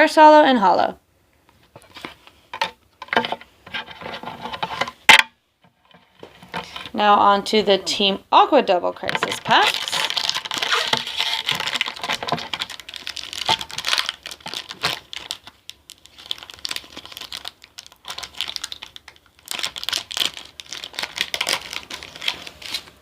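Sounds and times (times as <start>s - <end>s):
foil wrapper crinkling: 9.0s - 23.0s.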